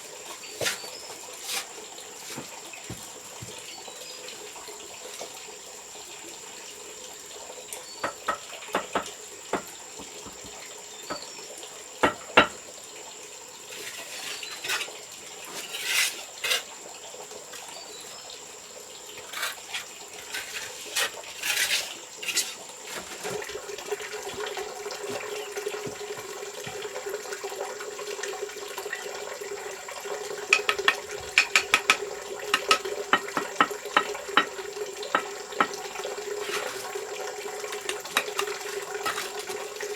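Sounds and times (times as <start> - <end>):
water pouring: 0.0 - 39.9
short scrapes: 15.5 - 16.7, 19.3 - 23.4.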